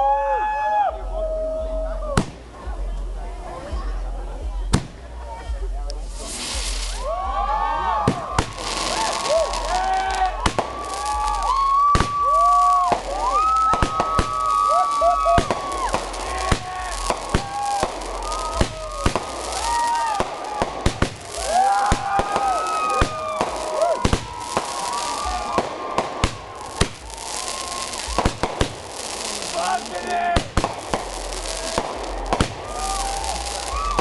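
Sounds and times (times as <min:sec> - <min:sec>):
fireworks bangs and pops: 0:02.2 - 0:02.6, 0:04.7 - 0:05.1, 0:05.9 - 0:07.1, 0:08.0 - 0:34.0
fireworks whistles: 0:06.0 - 0:07.1, 0:08.1 - 0:34.0.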